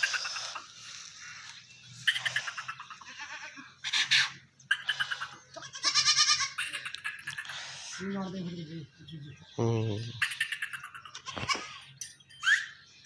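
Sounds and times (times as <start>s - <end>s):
goats bleating: 2.1s - 3.8s, 5.5s - 6.7s.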